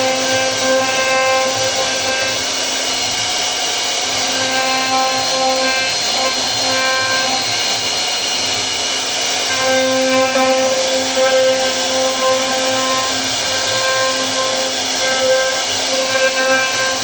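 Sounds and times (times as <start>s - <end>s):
router spindle cutting wood: 0.0s - 17.0s.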